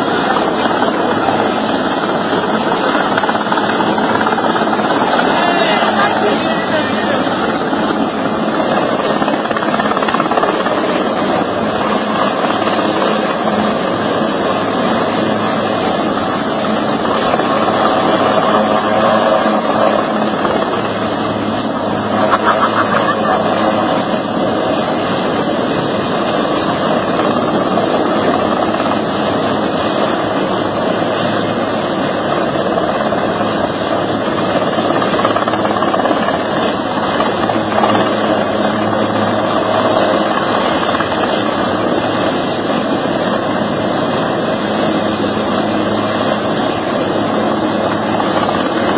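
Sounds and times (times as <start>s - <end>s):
helicopter drone: 0.0s - 48.9s.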